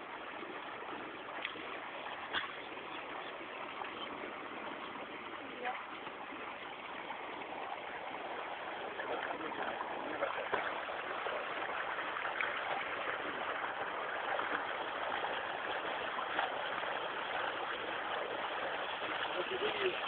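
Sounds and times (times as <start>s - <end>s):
faint splashes: 0.0s - 20.0s
floodwater rushing: 0.0s - 20.0s.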